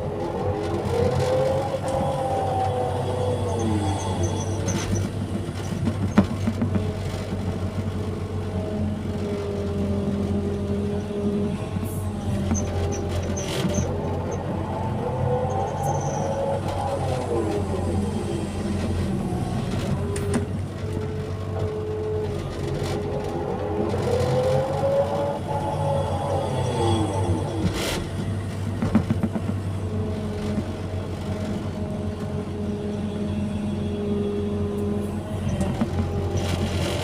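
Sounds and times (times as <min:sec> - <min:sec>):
diesel engine running: 0:00.0 - 0:37.0
hydraulic whine: 0:23.9 - 0:31.6.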